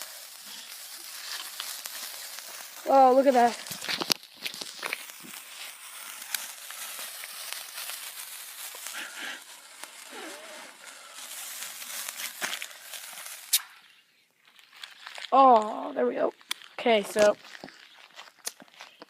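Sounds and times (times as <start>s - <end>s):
smoke bomb hissing: 0.0s - 13.9s
small crackles and clicks: 0.0s - 19.0s.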